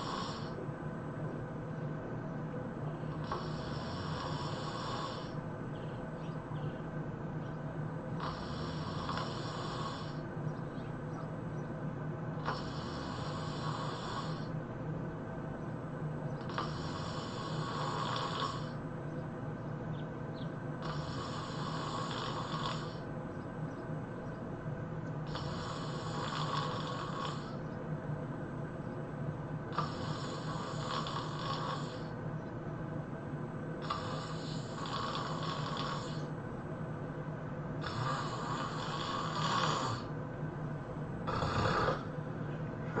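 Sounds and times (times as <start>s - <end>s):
person snoring heavily: 0.0s - 0.6s, 3.2s - 5.4s, 8.2s - 10.3s, 12.4s - 14.6s, 16.4s - 18.8s, 20.8s - 23.1s, 25.2s - 27.6s, 29.7s - 32.2s, 33.8s - 36.3s, 37.8s - 40.1s, 41.2s - 42.2s
steady low hum: 0.0s - 43.0s.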